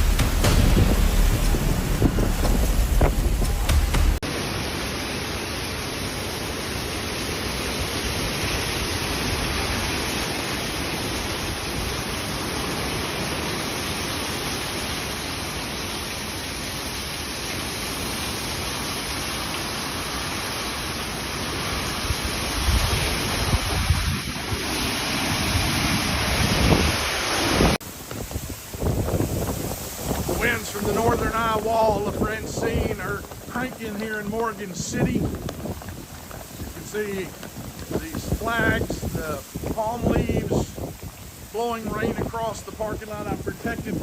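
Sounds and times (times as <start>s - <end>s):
wind gusts buffeting microphone: 0.0s - 4.2s, 21.3s - 44.0s
driving rain: 0.0s - 44.0s
hurricane wind: 0.0s - 44.0s.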